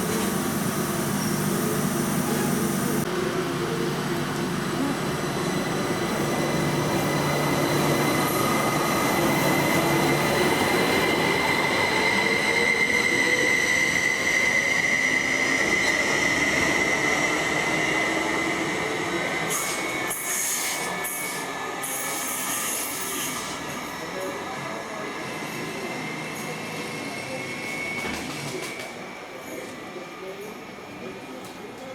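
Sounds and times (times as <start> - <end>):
train wheel squeal: 5.5 - 30.3.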